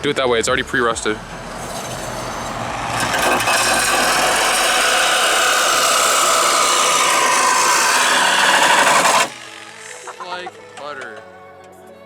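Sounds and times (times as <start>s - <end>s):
power saw cutting sheet metal: 0.0s - 11.2s.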